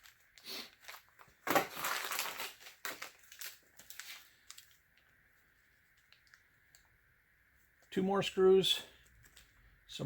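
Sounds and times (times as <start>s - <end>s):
plastic bag crinkling: 0.0s - 6.8s.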